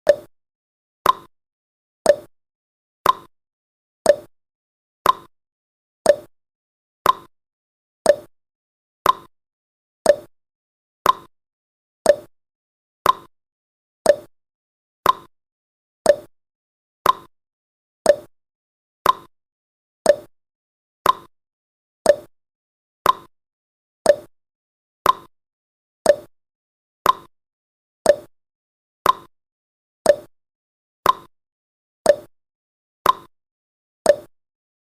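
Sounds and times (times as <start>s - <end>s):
timer ticking: 0.0s - 0.3s, 1.0s - 1.3s, 2.1s - 2.3s, 3.0s - 3.3s, 4.1s - 4.3s, 5.0s - 5.3s, 6.1s - 6.3s, 7.0s - 7.3s, 8.1s - 8.3s, 9.0s - 9.3s, 10.0s - 10.3s, 11.0s - 11.3s, 12.0s - 12.3s, 13.0s - 13.3s, 14.0s - 14.3s, 15.0s - 15.3s, 16.1s - 16.3s, 17.0s - 17.3s, 18.1s - 18.3s, 19.0s - 19.3s, 20.1s - 20.3s, 21.0s - 21.3s, 22.1s - 22.3s, 23.0s - 23.3s, 24.1s - 24.3s, 25.0s - 25.3s, 26.0s - 26.3s, 27.0s - 27.3s, 28.1s - 28.3s, 29.0s - 29.3s, 30.1s - 30.3s, 31.0s - 31.3s, 32.1s - 32.3s, 33.0s - 33.3s, 34.1s - 34.3s.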